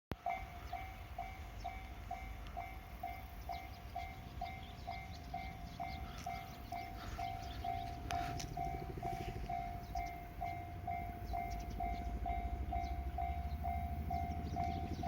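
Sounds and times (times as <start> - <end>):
level-crossing warning bell: 0.1 - 15.0
low rumble: 5.2 - 15.0.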